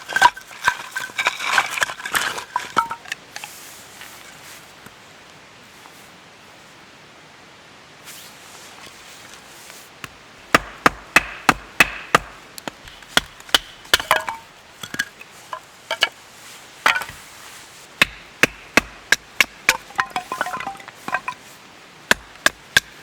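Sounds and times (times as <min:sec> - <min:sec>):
axe chopping wood: 0:10.0 - 0:15.1, 0:18.0 - 0:21.4, 0:22.1 - 0:23.0.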